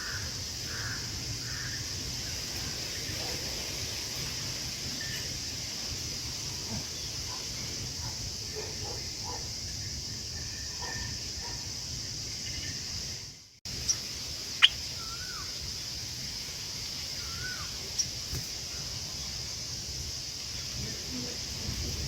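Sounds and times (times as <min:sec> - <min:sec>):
high insect drone: 0:00.0 - 0:22.0
faint bird calls: 0:13.8 - 0:15.5, 0:17.1 - 0:18.9
whistled bird calls: 0:13.8 - 0:15.5, 0:17.2 - 0:18.1.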